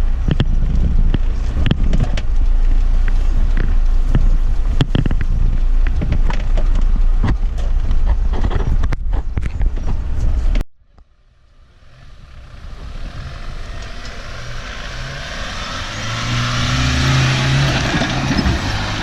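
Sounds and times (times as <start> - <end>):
off-road engine revving: 11.5 - 19.0.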